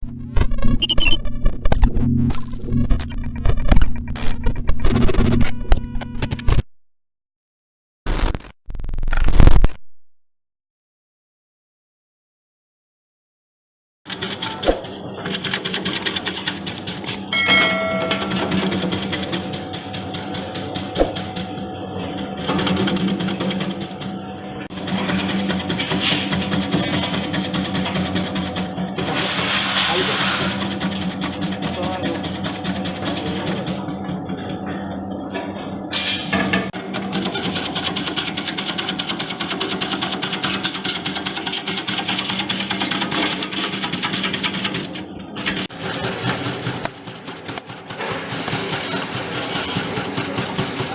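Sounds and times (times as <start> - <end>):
chopping machine motor hum: 14.2 - 35.8, 36.5 - 50.9
cutting mechanism clatter: 22.2 - 33.8, 36.8 - 50.9.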